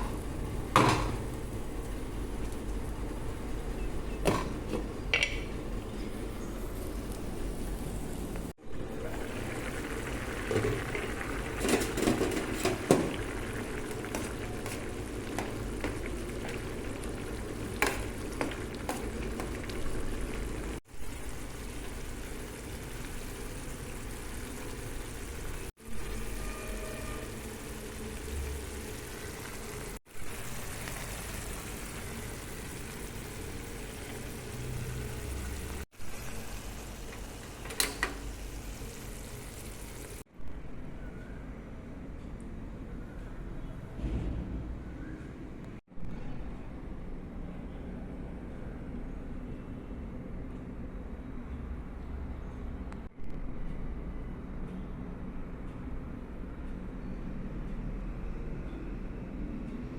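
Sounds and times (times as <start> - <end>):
food sizzling in a pan: 8.9 - 40.3.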